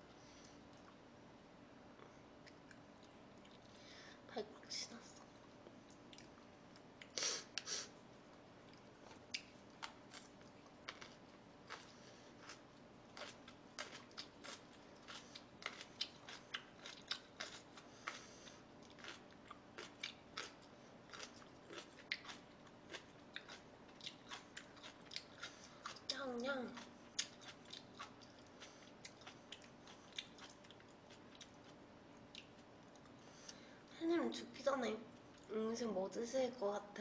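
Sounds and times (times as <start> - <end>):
crunchy chewing and biting: 8.6 - 26.1, 26.8 - 33.2.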